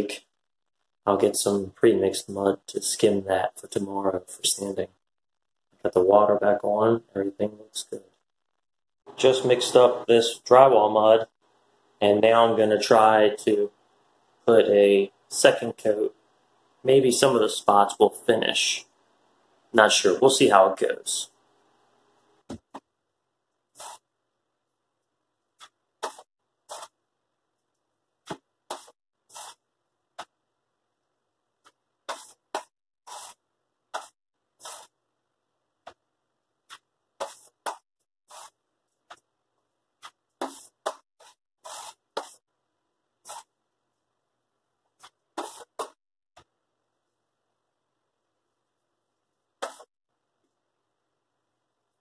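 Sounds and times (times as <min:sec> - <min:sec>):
drywall knife scraping: 0:25.6 - 0:27.0, 0:28.7 - 0:29.6, 0:32.1 - 0:33.4, 0:34.0 - 0:35.0, 0:36.7 - 0:38.6, 0:40.0 - 0:42.4.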